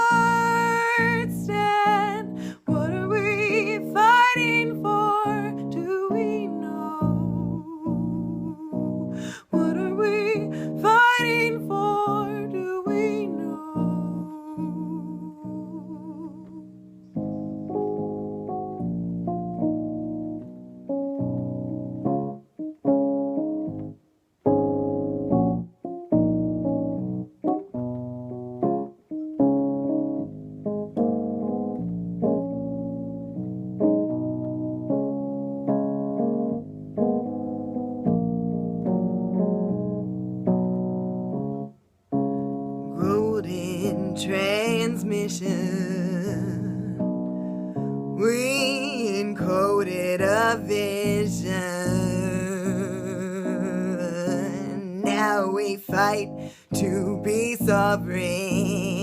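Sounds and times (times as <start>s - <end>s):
woman singing: 0.0s - 16.8s, 42.9s - 47.2s, 47.8s - 59.0s
piano playing slow chords: 0.0s - 59.0s.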